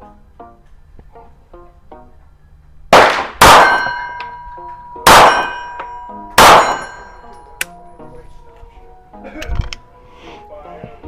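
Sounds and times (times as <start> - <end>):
pistol shots: 2.9 - 4.4, 5.0 - 7.1
steel targets ringing: 3.0 - 7.6.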